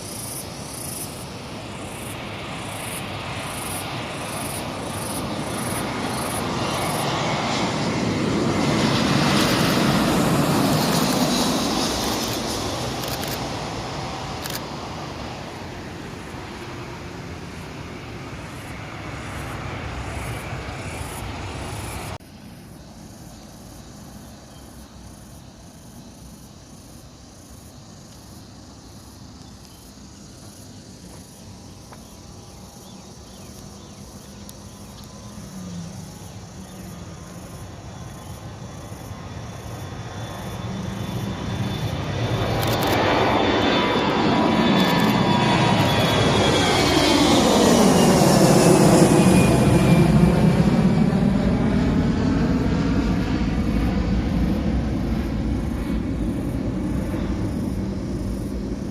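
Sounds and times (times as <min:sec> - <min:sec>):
insects chirping: 0:00.0 - 0:58.9
jet engine noise: 0:00.0 - 0:58.9.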